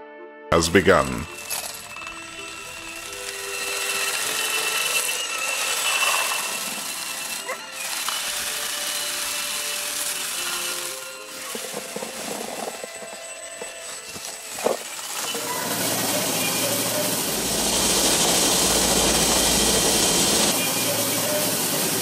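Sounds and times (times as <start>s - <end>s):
machinery humming: 0.8s - 22.0s
machinery hissing: 1.3s - 22.0s.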